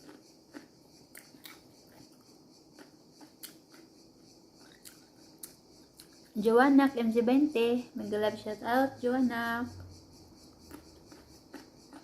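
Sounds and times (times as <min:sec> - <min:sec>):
person chewing: 0:00.0 - 0:04.0, 0:04.6 - 0:06.3, 0:10.6 - 0:12.0.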